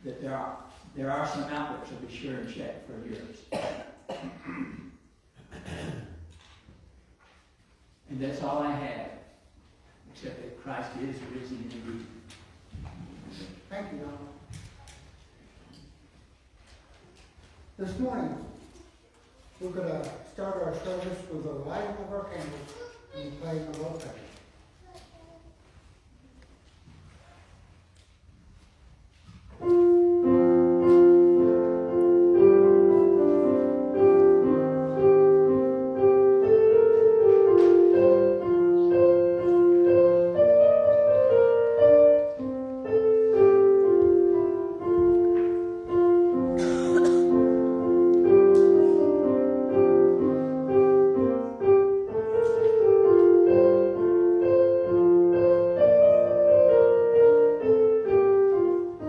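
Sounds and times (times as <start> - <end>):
gentle piano piece: 29.6 - 59.0.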